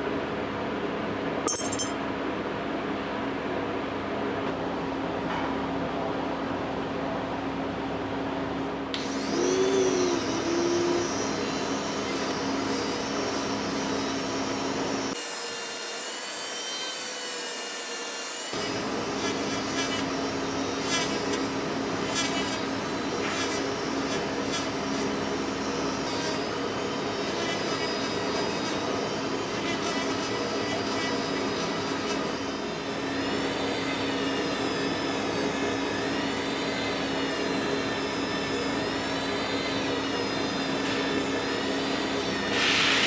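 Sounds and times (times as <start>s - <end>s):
small power tool sanding: 9.0s - 43.0s.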